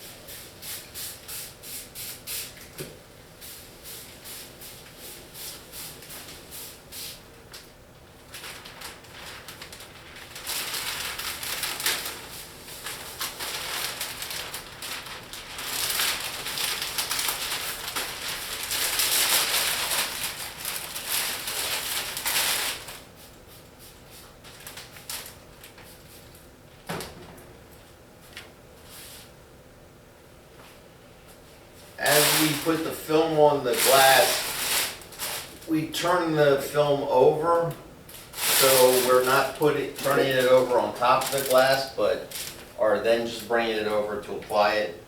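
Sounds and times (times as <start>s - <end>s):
liner peeling off film: 8.3s - 23.0s, 32.0s - 43.7s.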